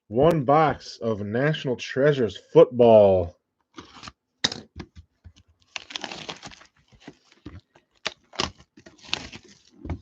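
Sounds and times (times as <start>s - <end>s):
shrink-wrap crinkling and tearing: 5.6s - 10.0s.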